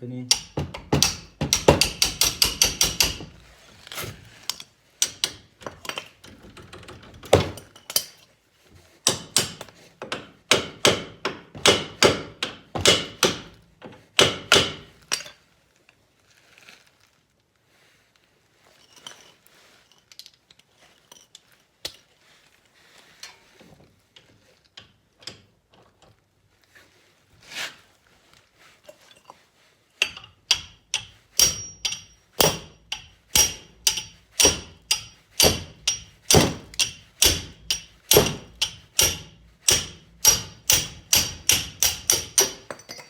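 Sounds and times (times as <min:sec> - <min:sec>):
hammer striking metal: 0:00.3 - 0:03.3, 0:10.5 - 0:13.5, 0:30.0 - 0:43.0
metal tools clinking: 0:07.5 - 0:08.3, 0:30.0 - 0:39.0, 0:41.8 - 0:43.0.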